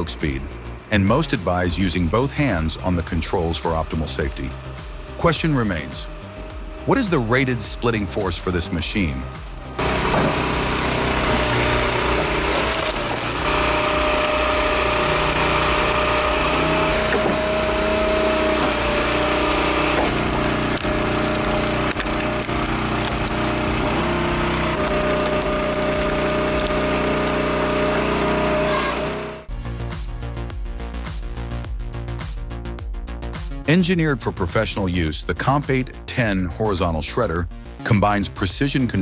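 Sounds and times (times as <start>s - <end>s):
log splitter engine whining: 0.0s - 29.5s.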